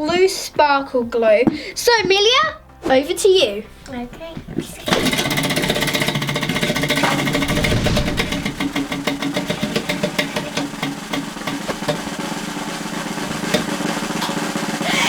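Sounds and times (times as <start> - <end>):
prize wheel ticking: 4.8 - 13.9.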